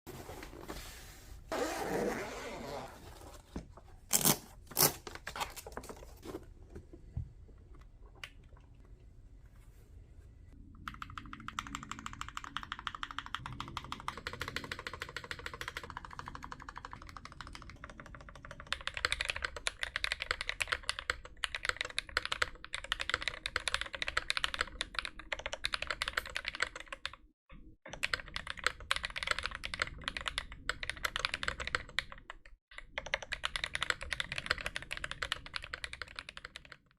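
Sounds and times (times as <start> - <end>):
mechanical keyboard typing: 10.8 - 27.2, 27.9 - 36.9.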